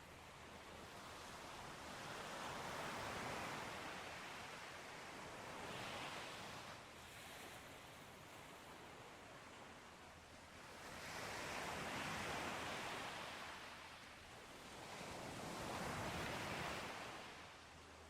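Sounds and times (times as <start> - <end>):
sea waves breaking on shore: 10.6 - 17.7.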